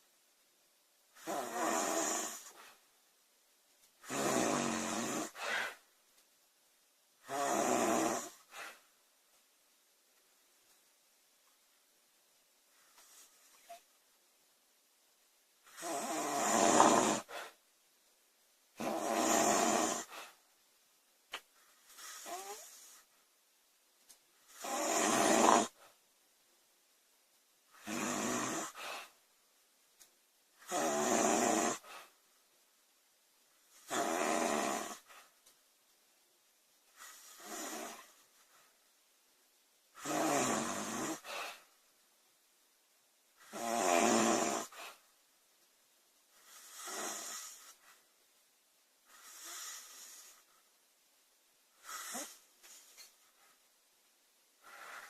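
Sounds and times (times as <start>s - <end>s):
woman snoring: 1.2s - 2.7s, 4.0s - 5.8s, 7.2s - 8.8s, 15.7s - 17.6s, 18.8s - 20.3s, 22.0s - 23.1s, 24.5s - 25.8s, 27.8s - 29.1s, 30.6s - 32.1s, 33.7s - 35.2s, 37.0s - 38.2s, 40.0s - 41.6s, 43.4s - 45.0s, 46.4s - 47.8s, 49.1s - 50.5s, 51.8s - 52.4s.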